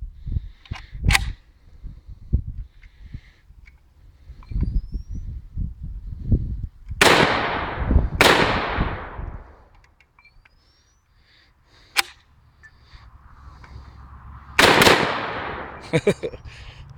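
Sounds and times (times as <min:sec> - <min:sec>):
sharp click: 0:00.6 - 0:01.4, 0:11.9 - 0:12.8
faint bird chirps: 0:04.4 - 0:05.4, 0:10.2 - 0:11.5
gunshots with long echo: 0:07.0 - 0:09.7, 0:14.5 - 0:16.3.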